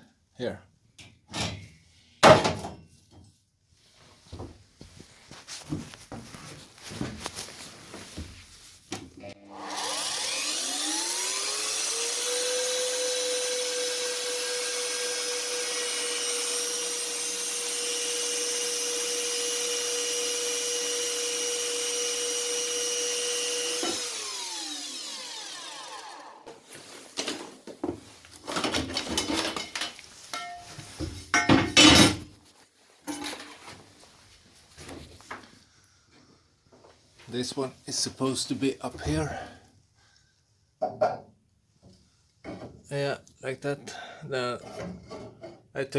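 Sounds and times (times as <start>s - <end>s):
electric power tool motor whine: 9.4s - 26.5s.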